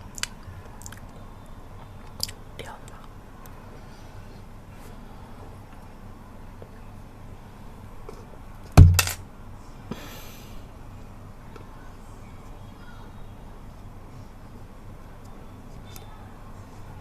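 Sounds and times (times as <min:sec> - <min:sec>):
hard object thudding on surface: 0:08.8 - 0:09.2.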